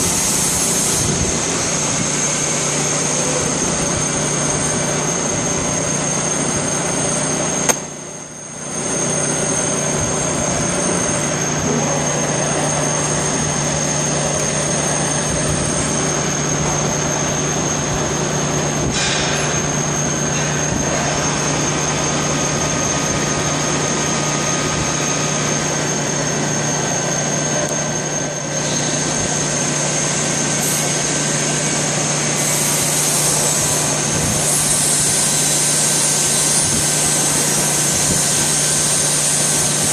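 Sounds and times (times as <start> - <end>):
high steady whine: 0.0 - 39.9
workshop machinery running: 0.0 - 39.9
sharp click: 7.6 - 7.9.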